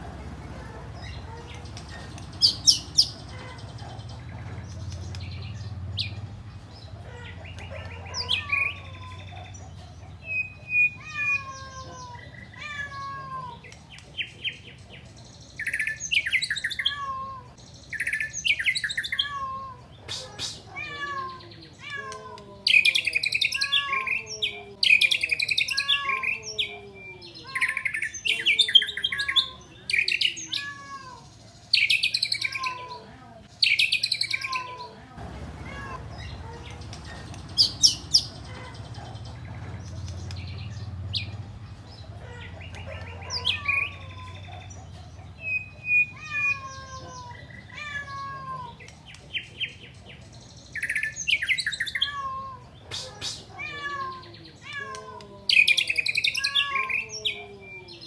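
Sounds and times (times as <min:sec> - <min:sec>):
songbird chirps trills and whistles: 0:00.2 - 0:12.8, 0:13.6 - 0:17.0, 0:17.6 - 0:20.7, 0:31.3 - 0:32.8, 0:33.6 - 0:34.8, 0:36.0 - 0:47.8, 0:48.7 - 0:53.5.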